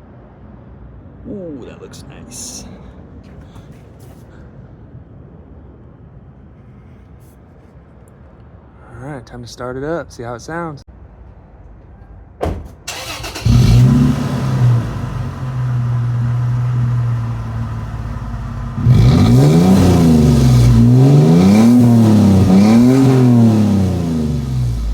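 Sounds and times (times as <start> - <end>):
engine cranking: 12.7 - 24.9
engine idling and revving: 12.9 - 24.9.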